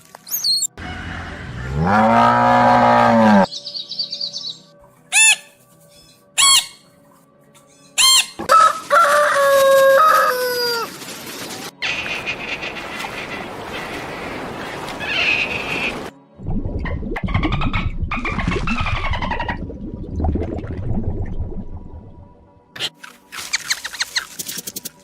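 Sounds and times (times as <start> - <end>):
rooster crowing: 0.8 - 2.6, 8.4 - 10.9.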